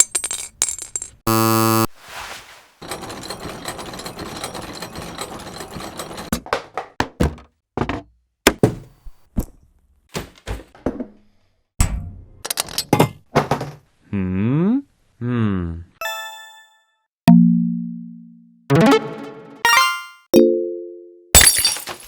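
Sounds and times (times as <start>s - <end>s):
brief buzz: 1.3s - 1.9s
dense rattling: 2.8s - 6.3s
sharp knocks and thunks: 6.3s - 9.5s.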